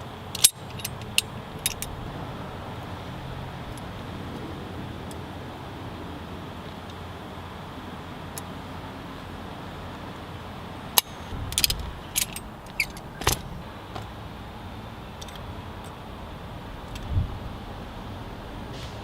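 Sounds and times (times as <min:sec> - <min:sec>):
sharp clicks and metallic rattles: 0:00.0 - 0:02.2, 0:10.9 - 0:14.1
dull thump: 0:11.3 - 0:14.1.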